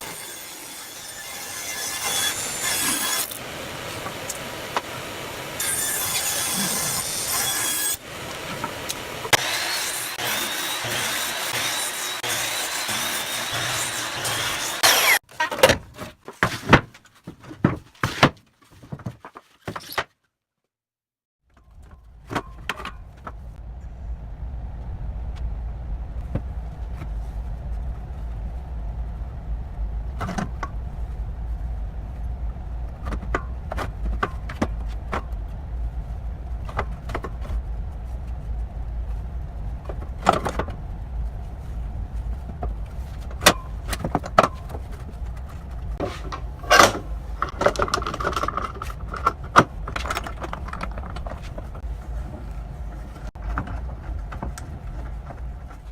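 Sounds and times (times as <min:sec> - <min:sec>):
steady low rumble: 0:21.7 - 0:55.9
knocks and clatter of parts: 0:42.5 - 0:51.8.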